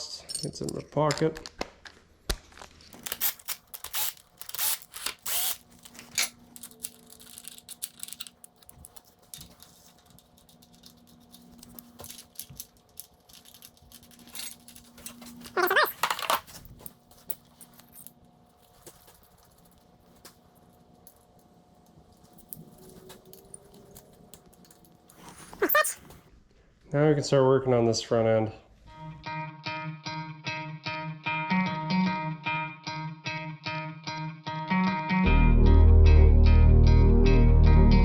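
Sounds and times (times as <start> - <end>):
metal tools clinking and rattling: 0.0 - 0.8, 3.0 - 20.3, 22.1 - 26.1.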